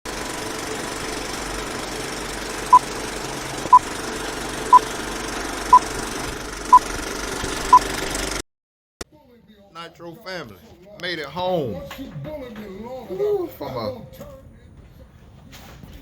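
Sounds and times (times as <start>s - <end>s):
steady engine-like hum: 0.1s - 8.4s.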